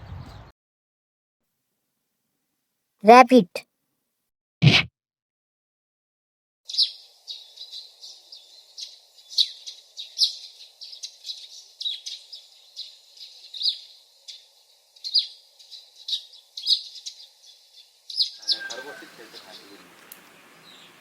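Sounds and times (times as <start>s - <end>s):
small birds chirping: 0.0s - 0.5s, 6.7s - 21.0s
faint outdoor hiss: 6.7s - 21.0s.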